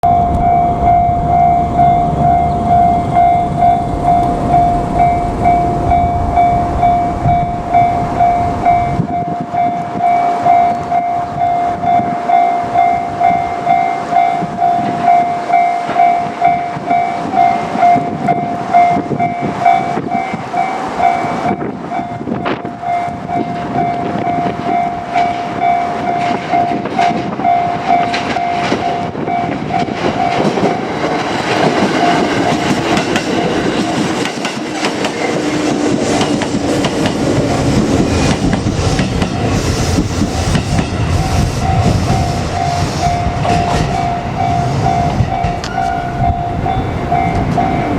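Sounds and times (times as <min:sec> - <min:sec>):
level-crossing bell dinging: 0:00.0 - 0:30.8, 0:42.5 - 0:47.9
low train rumble: 0:00.0 - 0:47.9
train wheel clicks: 0:21.3 - 0:44.3.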